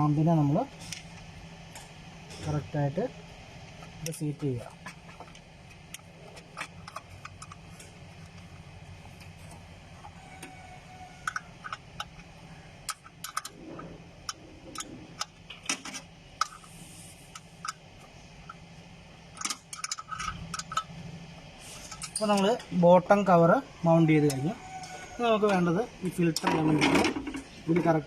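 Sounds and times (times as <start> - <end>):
steady low hum: 0.0 - 28.0
metal cover clicks and clinks: 12.9 - 13.5, 19.4 - 20.9, 21.9 - 22.7.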